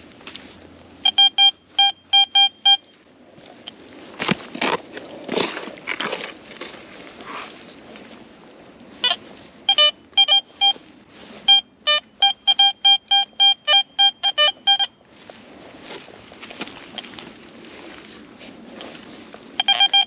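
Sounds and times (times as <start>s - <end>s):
metal detector beeping: 1.0s - 3.0s, 9.0s - 10.8s, 11.4s - 15.0s, 19.6s - 20.0s.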